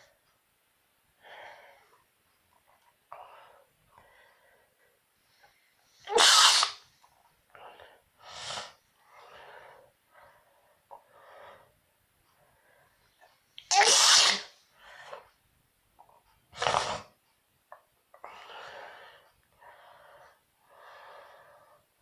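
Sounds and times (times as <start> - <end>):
person sneezing: 6.1 - 6.8, 13.7 - 14.6.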